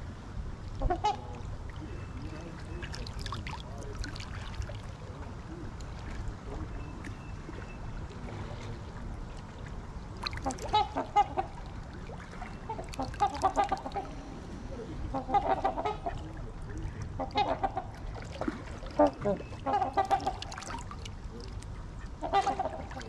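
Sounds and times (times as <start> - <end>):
low steady rumble: 0.0 - 23.0
swans honking: 10.4 - 11.8, 12.4 - 14.4, 15.1 - 16.2, 17.2 - 18.1, 18.9 - 20.8, 22.0 - 23.0.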